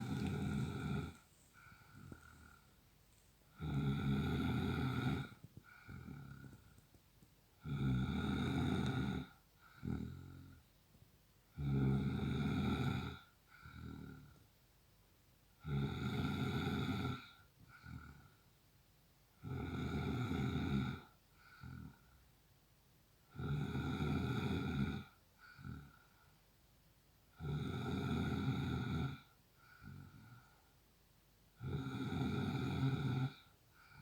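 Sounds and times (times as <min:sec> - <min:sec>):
man snoring: 0:00.0 - 0:02.6, 0:03.6 - 0:06.6, 0:07.6 - 0:10.4, 0:11.6 - 0:14.3, 0:15.6 - 0:17.4, 0:19.4 - 0:21.1, 0:23.4 - 0:26.0, 0:27.4 - 0:29.3, 0:31.6 - 0:33.5
quiet breath: 0:00.0 - 0:14.7, 0:16.3 - 0:18.7, 0:20.8 - 0:22.5, 0:24.1 - 0:26.8, 0:28.1 - 0:34.0.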